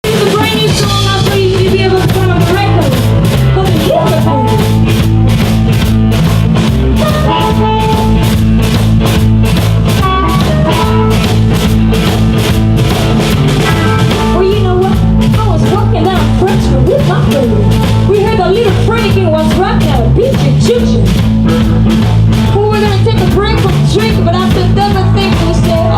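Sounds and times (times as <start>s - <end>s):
blues-rock band playing: 0.0s - 25.9s
drum kit beat: 0.0s - 25.9s
electric guitar: 0.0s - 25.9s.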